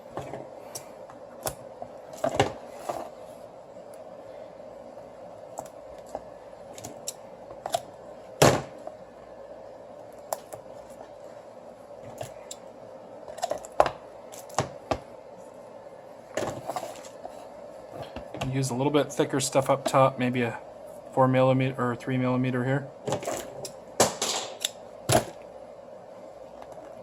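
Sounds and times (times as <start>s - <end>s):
faint steady hum: 0.0s - 27.0s.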